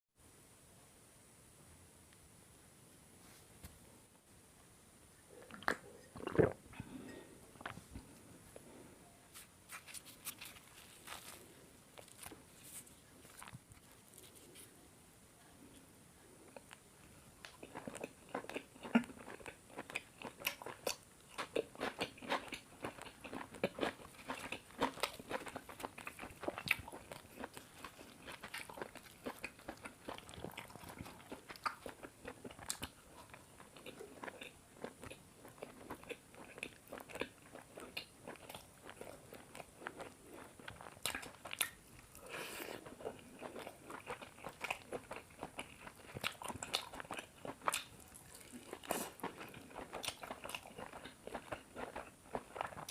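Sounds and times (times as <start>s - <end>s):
chewing and biting food: 17.5s - 52.9s.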